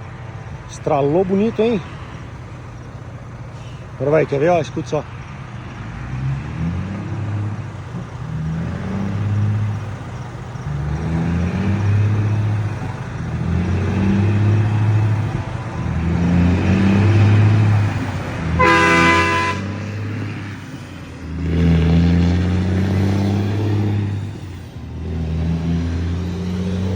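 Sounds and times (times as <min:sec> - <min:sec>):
truck engine revving: 0:00.0 - 0:26.9
truck horn: 0:13.4 - 0:20.7.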